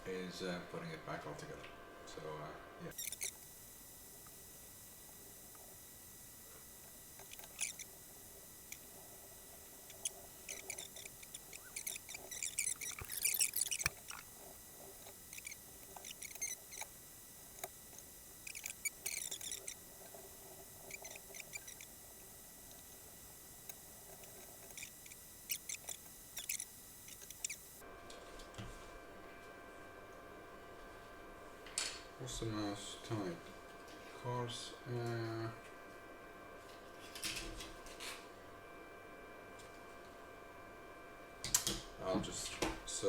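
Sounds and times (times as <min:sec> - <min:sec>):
plastic clicks and scrapes: 0:02.9 - 0:03.5, 0:06.5 - 0:27.8.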